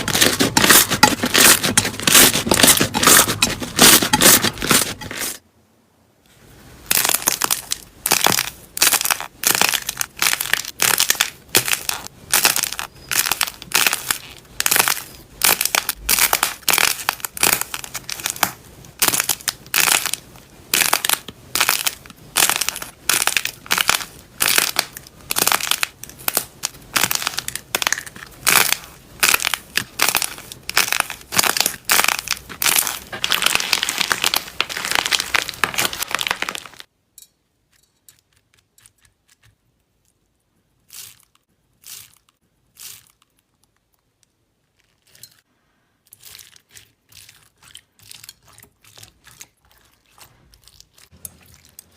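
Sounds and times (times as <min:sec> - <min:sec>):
slime crunching crackles: 0:00.0 - 0:05.3, 0:06.8 - 0:36.9, 0:46.1 - 0:51.9.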